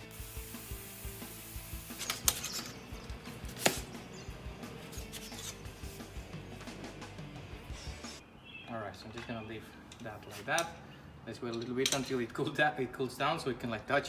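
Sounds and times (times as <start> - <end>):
quiet background music: 0.0 - 8.2.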